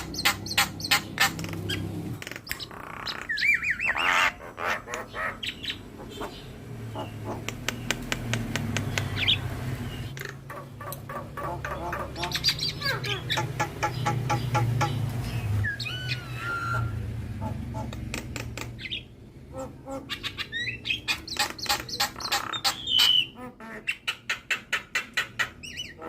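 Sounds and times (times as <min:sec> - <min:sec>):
bird clicks and squawks: 0:00.0 - 0:05.5, 0:07.0 - 0:09.3, 0:10.1 - 0:15.0, 0:17.8 - 0:19.0, 0:21.0 - 0:23.2.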